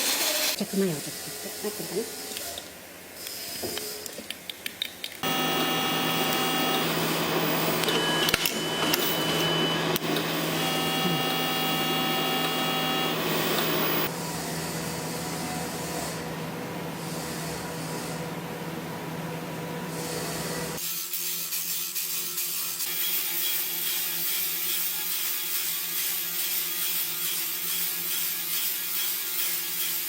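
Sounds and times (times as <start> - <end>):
factory machinery humming and whining: 5.2 - 19.0.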